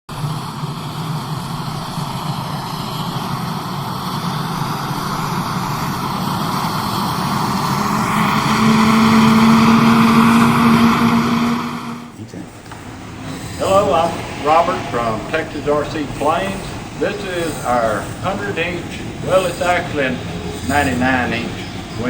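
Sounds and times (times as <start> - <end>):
model plane engine droning: 0.1 - 22.0.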